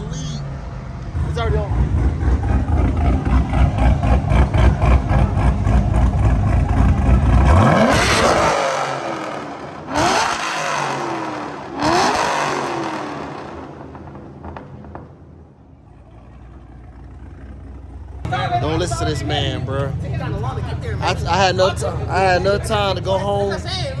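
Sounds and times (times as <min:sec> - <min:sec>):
car engine at full throttle: 0:00.0 - 0:24.0.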